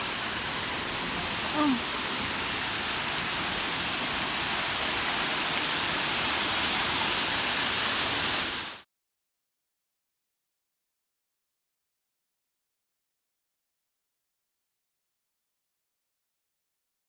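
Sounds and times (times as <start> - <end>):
waterfall roaring: 0.0 - 8.8.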